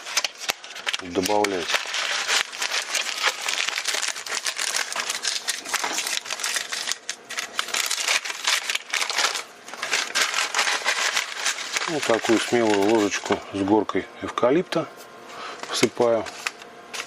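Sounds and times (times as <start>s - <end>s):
paper packet crinkling: 0.0s - 13.7s, 15.4s - 17.0s.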